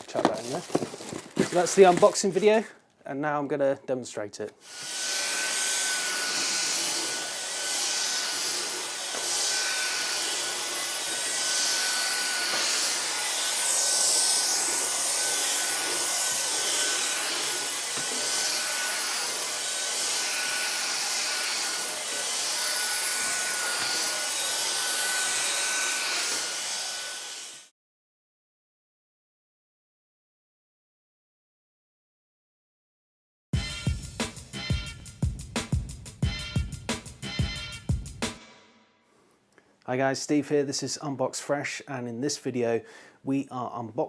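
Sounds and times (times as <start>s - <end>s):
vacuum cleaner whining: 4.6s - 27.7s.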